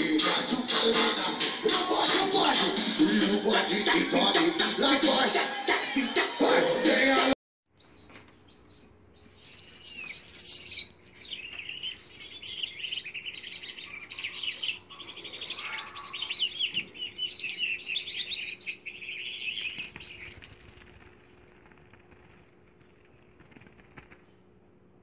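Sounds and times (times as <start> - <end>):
cage birds chirping: 7.7 - 25.0.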